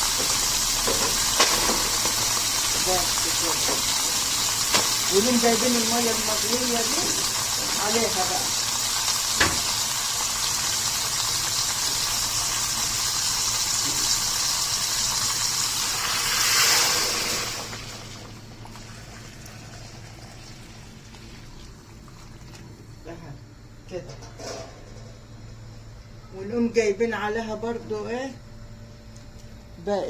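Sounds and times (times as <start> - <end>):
water pouring into a pot: 0.0 - 22.9.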